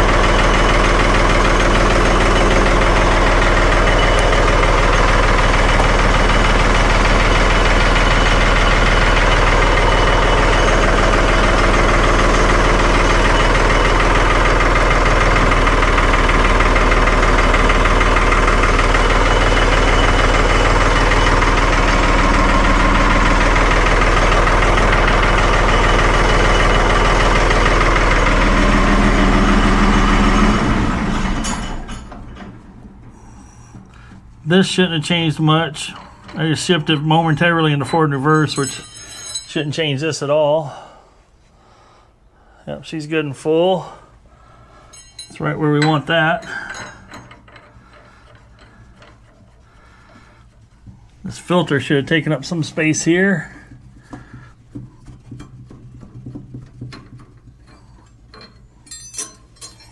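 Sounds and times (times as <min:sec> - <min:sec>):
diesel engine running steadily: 0:00.0 - 0:37.5.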